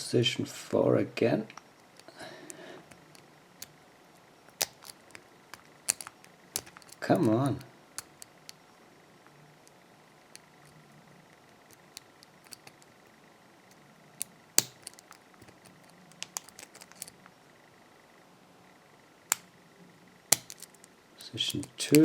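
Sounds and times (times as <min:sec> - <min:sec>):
lock pick clicking in padlock: 0:04.5 - 0:05.2, 0:05.8 - 0:07.0, 0:11.7 - 0:12.8, 0:14.2 - 0:17.2, 0:20.3 - 0:20.8.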